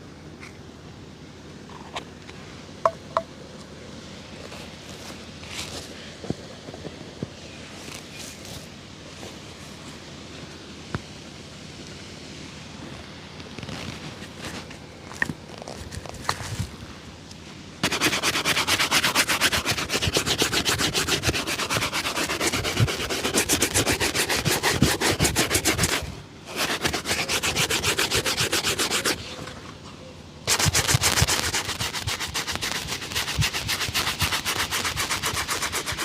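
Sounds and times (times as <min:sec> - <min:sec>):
cloth buffing leather shoe: 0:17.8 - 0:29.5, 0:30.5 - 0:36.0.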